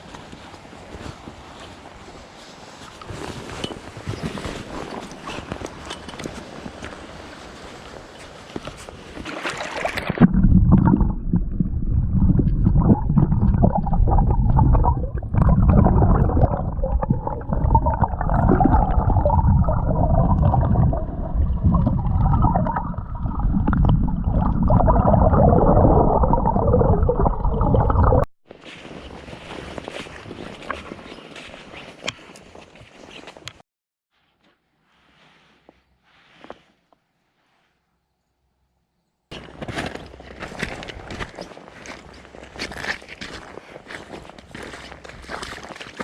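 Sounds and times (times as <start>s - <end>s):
muffled water sloshing and gurgling: 8.9s - 28.3s.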